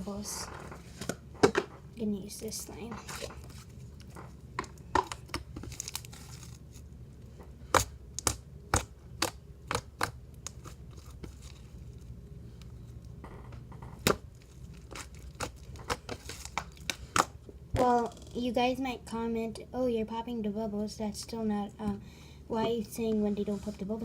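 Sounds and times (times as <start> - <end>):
slime worked by hand: 7.6 - 12.2, 14.0 - 18.0.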